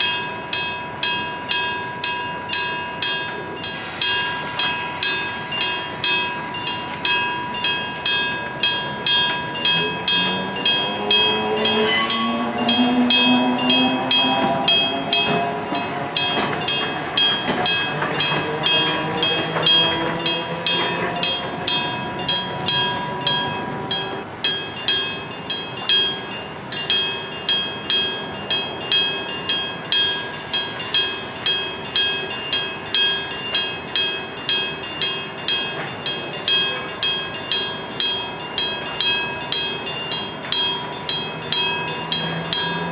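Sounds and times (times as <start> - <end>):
level crossing bell ringing: 0.0 - 42.9
train passing: 0.0 - 42.9
brief high tone: 11.6 - 13.1.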